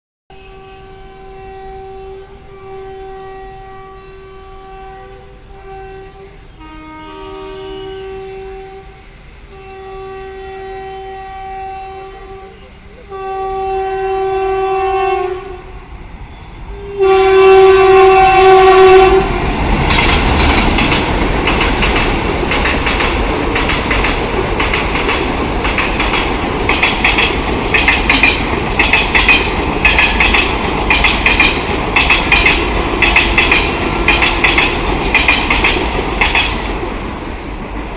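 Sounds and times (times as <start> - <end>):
locomotive horn blasts: 0.3 - 15.8, 16.4 - 19.5
train wheels rattling on track: 0.8 - 37.9.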